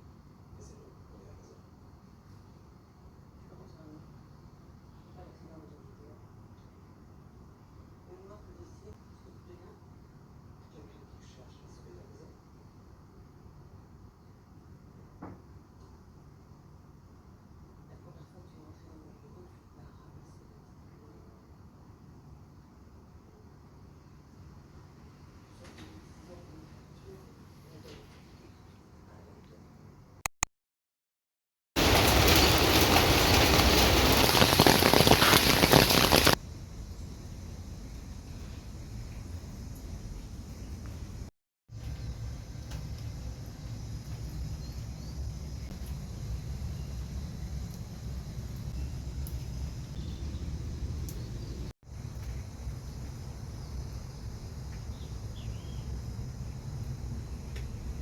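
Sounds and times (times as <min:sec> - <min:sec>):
short clicks: 0:30.3 - 0:30.5
pattering of falling water: 0:31.8 - 0:36.4
faint hiss: 0:31.8 - 0:41.2.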